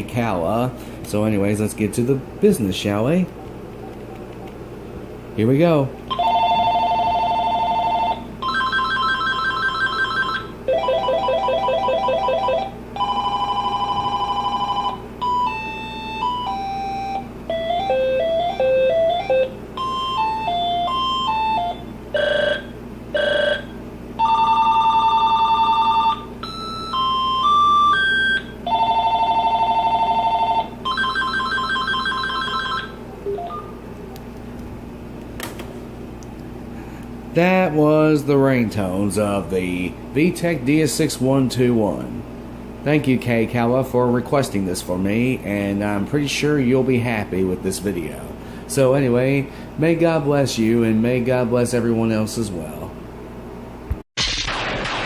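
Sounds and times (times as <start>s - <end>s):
phone ringtones: 6.1s - 33.8s.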